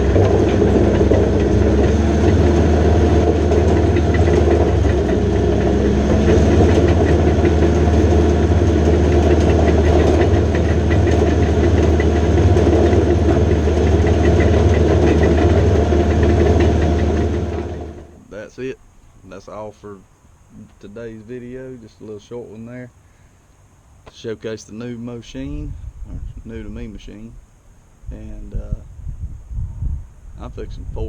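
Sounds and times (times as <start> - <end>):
dozer diesel engine running: 0.0 - 18.5.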